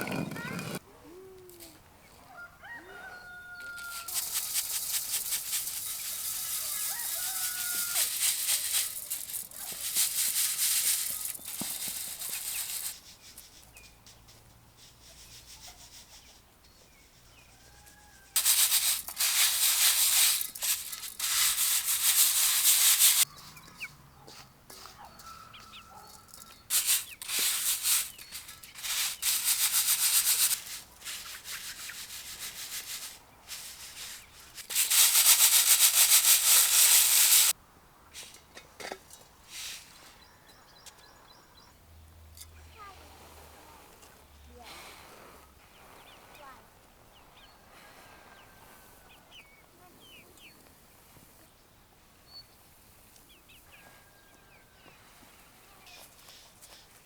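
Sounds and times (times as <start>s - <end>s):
chickens clucking faintly: 0.0s - 4.8s, 23.2s - 27.4s
dry grain rustling by hand: 3.8s - 16.1s, 18.4s - 23.3s, 26.3s - 37.6s.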